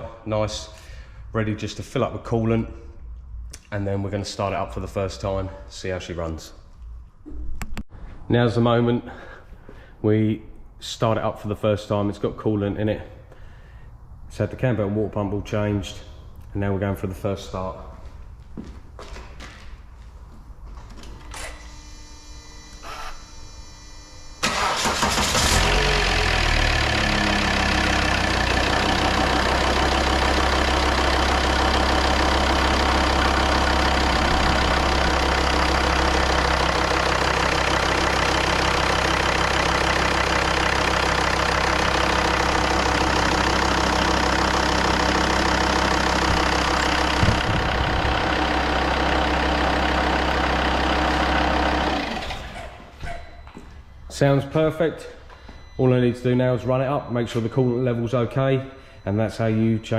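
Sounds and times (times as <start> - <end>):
diesel engine starting and idling: 24.2 - 59.9.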